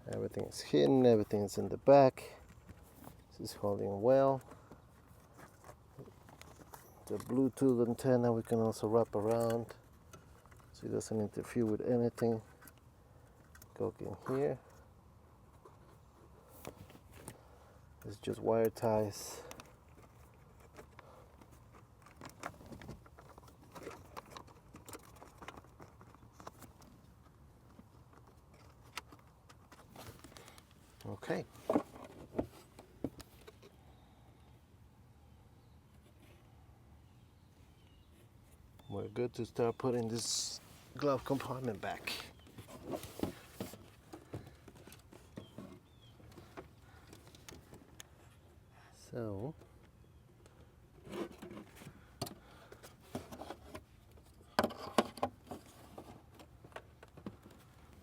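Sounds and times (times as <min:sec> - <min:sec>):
wiring rustling: 0:39.3 - 0:48.2.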